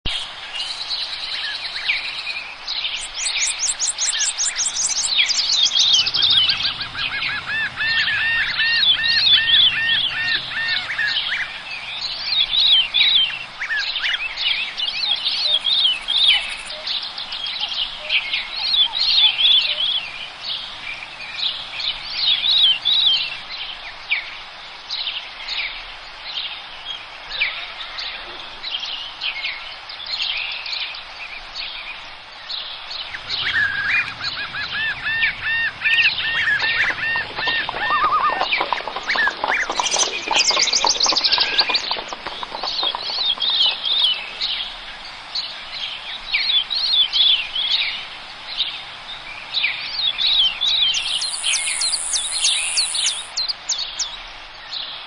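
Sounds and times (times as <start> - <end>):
birds chirping and whistling: 0.1 - 23.5, 33.0 - 44.8, 49.6 - 53.8
fast high bird trill: 50.9 - 53.4.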